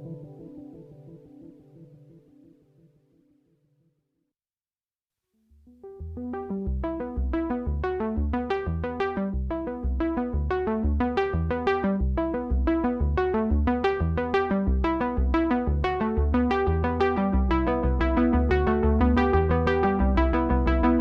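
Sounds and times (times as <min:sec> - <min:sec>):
synthesized keyboard melody: 0:05.7 - 0:21.0
steady bass beat: 0:06.7 - 0:21.0.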